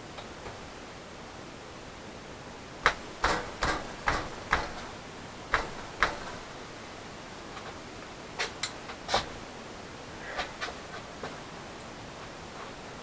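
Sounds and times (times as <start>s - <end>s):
knocks on steel in a vise: 2.8s - 6.4s.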